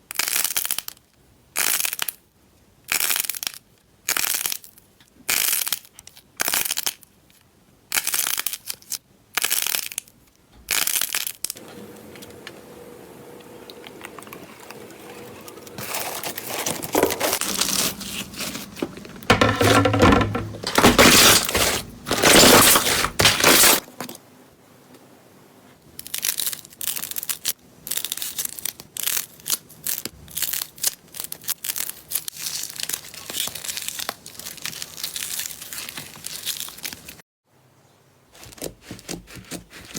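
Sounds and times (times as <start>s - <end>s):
slime squishing and crackling: 26.0s - 37.2s.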